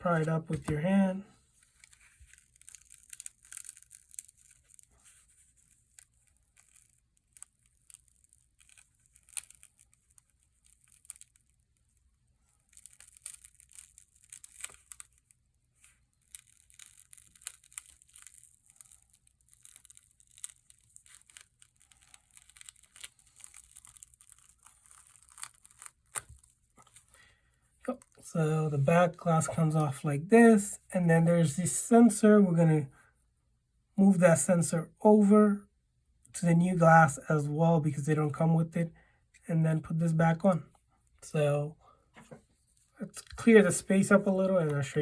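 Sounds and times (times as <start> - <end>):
adhesive crackling and tearing: 1.6 - 27.3.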